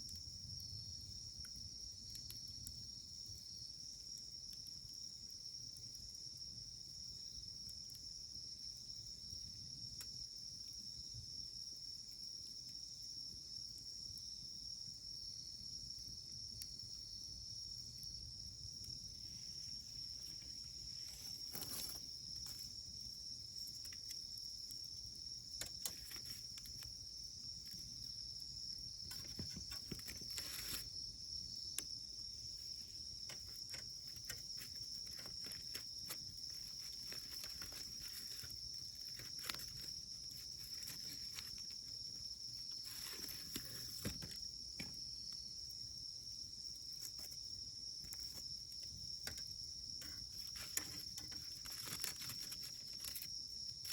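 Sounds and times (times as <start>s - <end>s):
insect trill: 0.0s - 53.9s
wood fire crackling: 17.8s - 44.2s.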